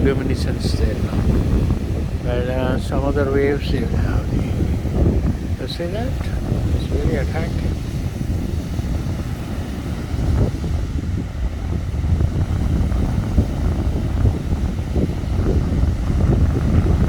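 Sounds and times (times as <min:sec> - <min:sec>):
ocean surf breaking: 0:00.0 - 0:17.0
wind on microphone: 0:00.0 - 0:17.0.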